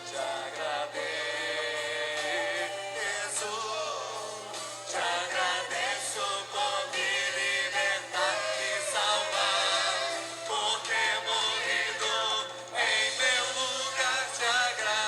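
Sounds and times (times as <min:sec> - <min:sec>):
vocal group singing in harmony: 0:00.0 - 0:15.0.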